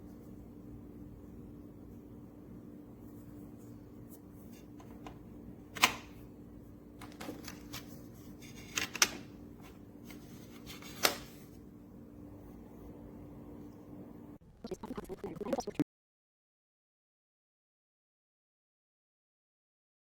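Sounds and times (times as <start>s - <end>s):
steady low hum: 0.0s - 15.8s.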